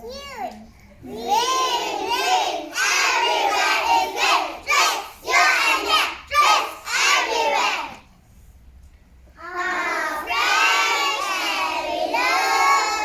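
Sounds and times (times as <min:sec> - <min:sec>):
children reciting in unison: 0:01.0 - 0:08.1, 0:09.4 - 0:13.0.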